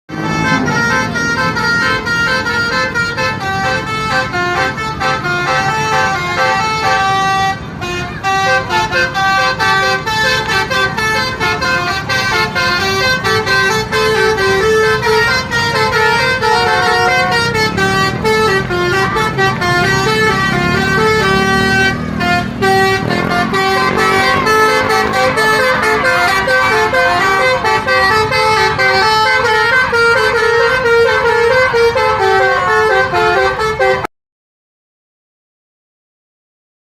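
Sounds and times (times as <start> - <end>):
musical air horn playing a tune: 0.1 - 34.1.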